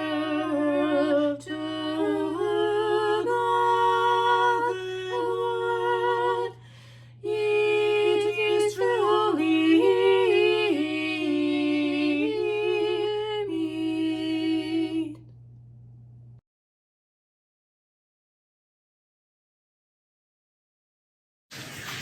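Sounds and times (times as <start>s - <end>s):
woman singing unaccompanied: 0.0s - 15.3s
low hum: 0.0s - 16.4s.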